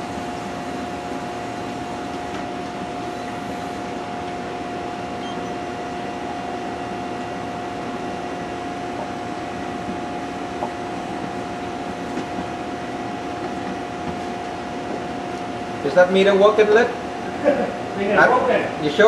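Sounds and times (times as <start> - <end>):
machine tool whining: 0.0 - 12.0.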